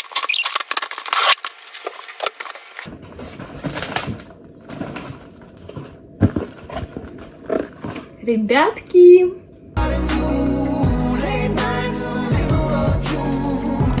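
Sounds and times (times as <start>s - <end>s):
packaging crackling and rustling: 0.0s - 8.2s.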